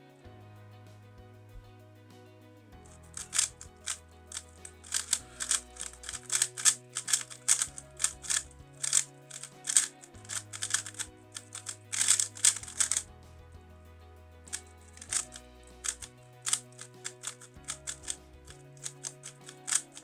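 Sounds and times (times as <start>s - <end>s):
background music with bass line: 0.0s - 20.0s
plastic puzzle cube clacking: 3.1s - 13.1s, 14.5s - 20.0s.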